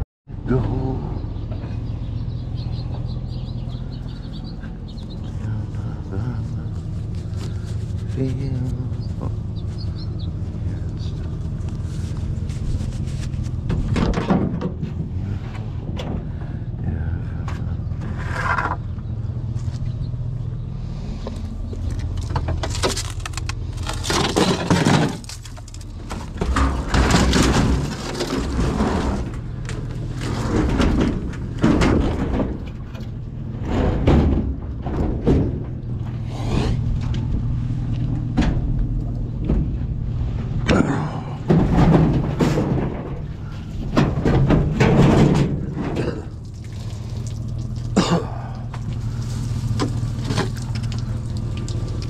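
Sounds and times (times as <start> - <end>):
vehicle engine idling: 0.3 - 52.0
metal scrap clanking: 22.2 - 36.3, 36.9 - 46.3.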